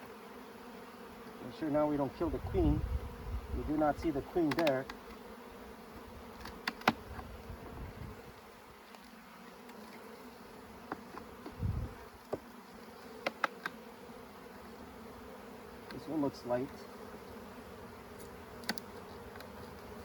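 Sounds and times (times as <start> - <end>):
bees buzzing: 0.0 - 20.0
sharp clicks: 4.4 - 5.1.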